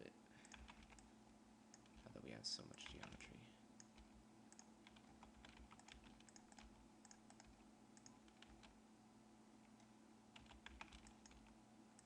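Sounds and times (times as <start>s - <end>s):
low steady hum: 0.0s - 12.0s
keyboard and mouse clicks: 0.4s - 1.1s, 1.7s - 2.0s, 2.7s - 3.2s, 3.8s - 8.8s, 9.7s - 12.0s.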